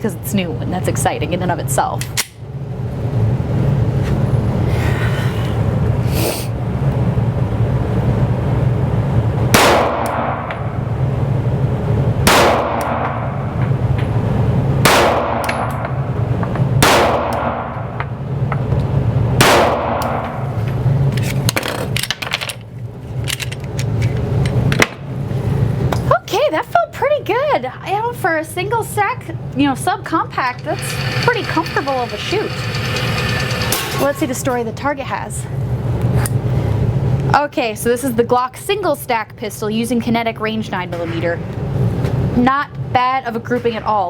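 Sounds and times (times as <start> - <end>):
steady low hum: 0.0 - 44.0
pistol shots echoing indoors: 9.6 - 10.8, 12.2 - 13.6, 14.8 - 16.0, 16.8 - 18.1, 19.4 - 20.5.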